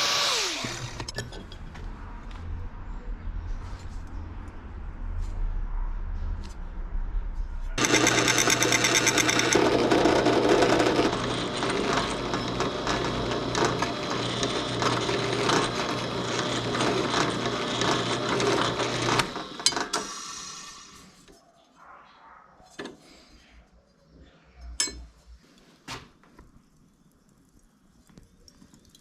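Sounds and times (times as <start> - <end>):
electric power tool rattling: 0.0 - 1.2, 7.8 - 20.6.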